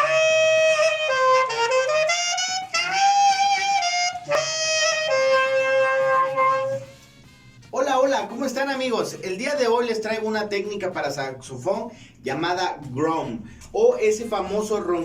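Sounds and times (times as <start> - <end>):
saxophone melody: 0.0 - 7.8.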